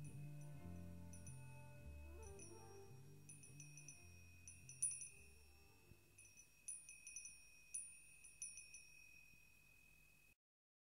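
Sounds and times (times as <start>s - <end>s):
low sustained music notes: 0.0s - 6.4s
held high ringing tone: 0.0s - 10.4s
tinkling chime notes: 0.0s - 10.4s.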